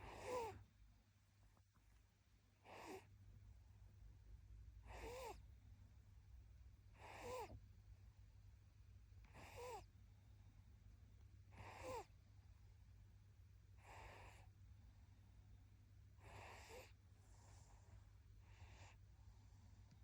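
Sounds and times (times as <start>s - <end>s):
baby snoring softly: 0.0s - 0.6s, 2.6s - 3.1s, 4.8s - 5.5s, 6.9s - 7.6s, 9.3s - 10.0s, 11.4s - 12.2s, 13.8s - 14.6s, 16.2s - 19.0s.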